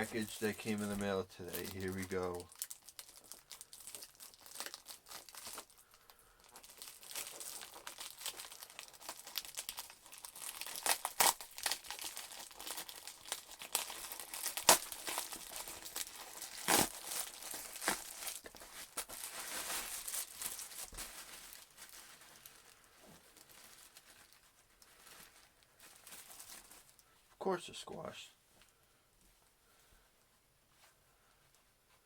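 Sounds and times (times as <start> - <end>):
packaging crinkling and rustling: 0.0 - 27.1
parcel packaging tearing: 1.6 - 5.9, 6.5 - 22.0.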